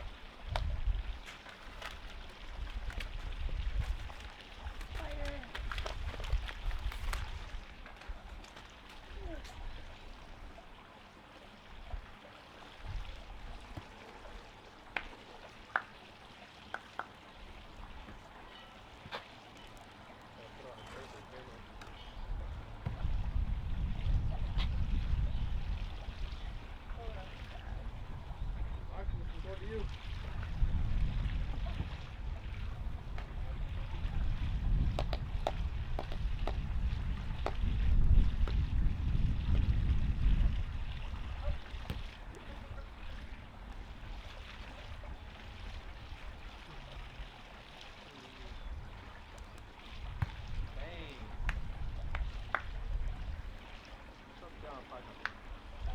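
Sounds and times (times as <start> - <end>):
wind rumble on microphone: 0.0 - 10.6, 12.8 - 13.8, 21.4 - 47.3, 48.4 - 53.8, 55.4 - 55.9
campfire crackling and popping: 49.1 - 53.6.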